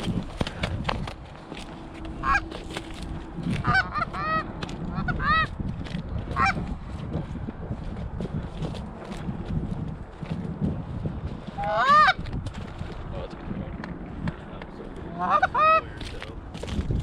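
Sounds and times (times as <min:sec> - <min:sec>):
low rumble: 0:00.0 - 0:17.0
geese honking: 0:02.1 - 0:02.6, 0:03.4 - 0:05.5, 0:06.3 - 0:06.7, 0:11.6 - 0:12.2, 0:15.1 - 0:15.9.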